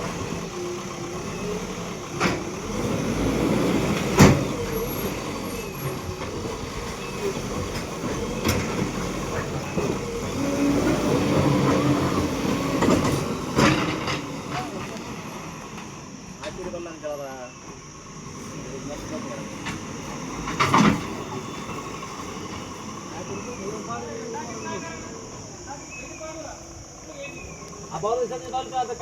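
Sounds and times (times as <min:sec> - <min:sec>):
backhoe diesel engine running: 0:00.0 - 0:29.0.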